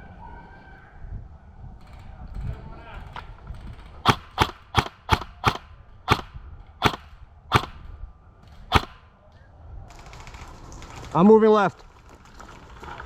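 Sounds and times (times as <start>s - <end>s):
airsoft gun shots: 4.0s - 8.0s, 8.7s - 9.1s.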